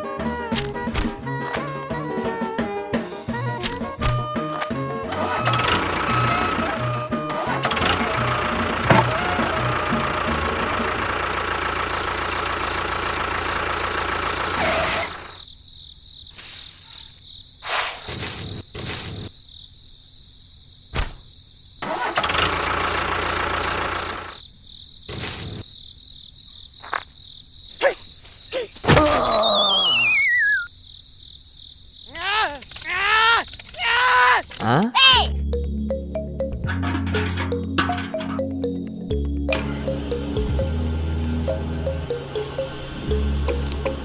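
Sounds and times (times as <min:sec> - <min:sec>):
small motor running: 0:05.1 - 0:15.4
sharp knocks: 0:08.8 - 0:09.8
high cricket-like chirp: 0:13.7 - 0:34.9
falling whistle: 0:28.9 - 0:30.7.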